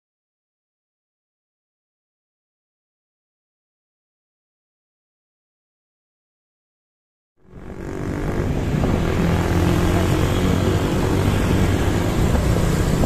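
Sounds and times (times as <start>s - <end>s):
bus engine humming: 7.5s - 13.0s.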